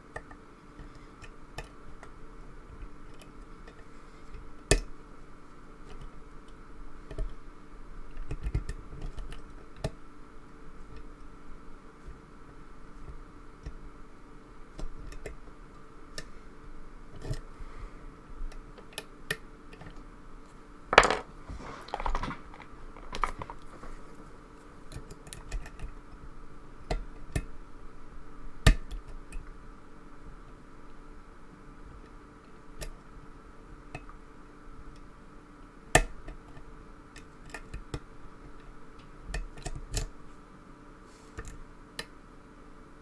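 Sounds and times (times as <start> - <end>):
clatter: 21.0 - 24.1.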